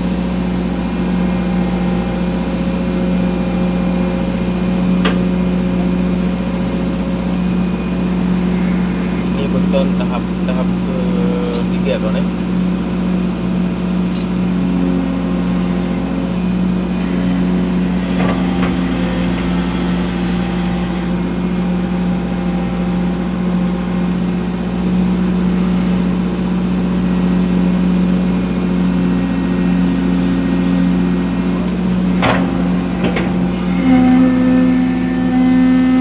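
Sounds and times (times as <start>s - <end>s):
diesel engine humming: 0.0s - 36.0s.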